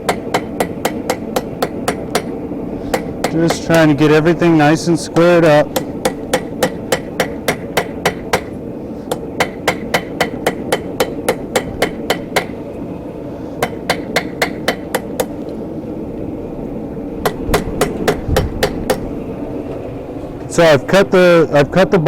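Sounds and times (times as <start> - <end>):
hammer striking steel on anvil: 0.0 - 3.9, 5.7 - 12.6, 13.6 - 15.4, 17.2 - 19.0.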